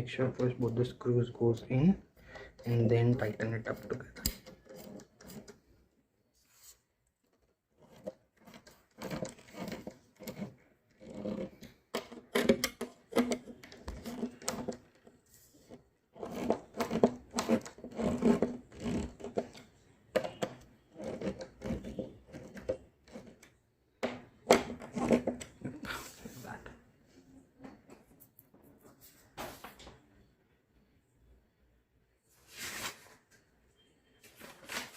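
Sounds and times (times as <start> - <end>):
screws turned by hand: 2.4 - 5.6, 7.3 - 19.6, 20.2 - 23.5.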